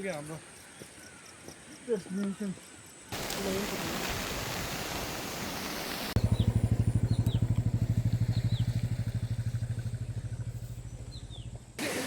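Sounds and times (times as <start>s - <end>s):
birds chirping: 0.0s - 4.0s, 5.4s - 11.9s
waterfall rushing: 3.2s - 6.2s
motorcycle engine running: 6.2s - 11.8s.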